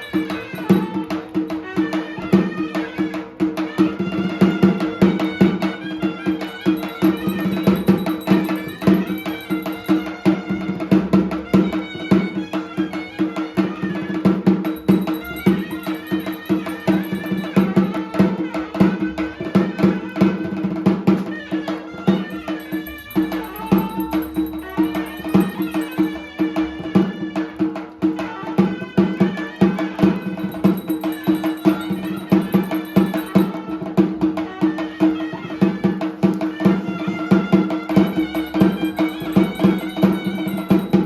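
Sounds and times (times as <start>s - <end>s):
fast percussion: 0.0s - 41.0s
melody: 6.4s - 10.1s, 14.7s - 18.0s, 22.2s - 26.2s, 30.2s - 33.6s, 38.0s - 41.0s.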